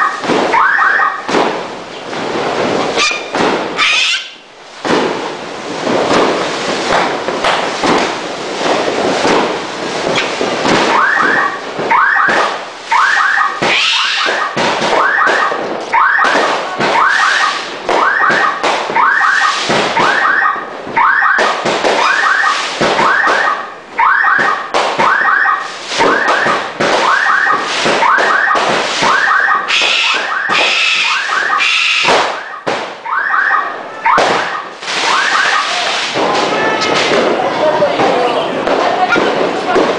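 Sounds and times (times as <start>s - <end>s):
fireworks bangs and crackles: 0.0s - 39.9s.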